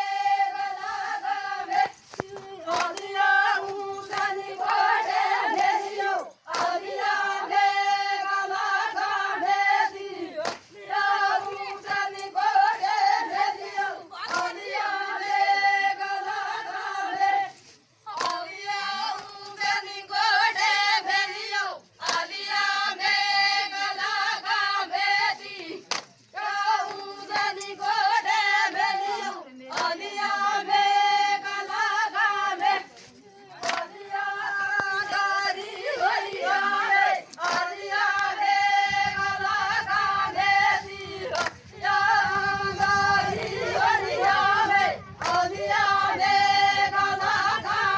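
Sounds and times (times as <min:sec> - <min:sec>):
person singing unaccompanied: 0:00.0 - 0:47.9
low pulsing accompaniment: 0:37.7 - 0:47.9.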